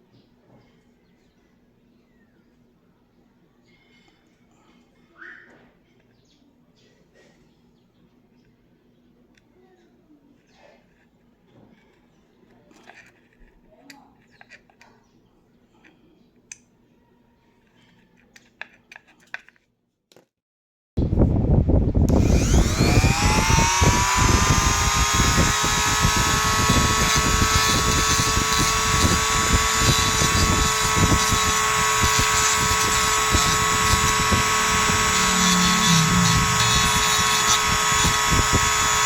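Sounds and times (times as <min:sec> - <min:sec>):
electric rotary tool whining: 0:22.1 - 0:39.0.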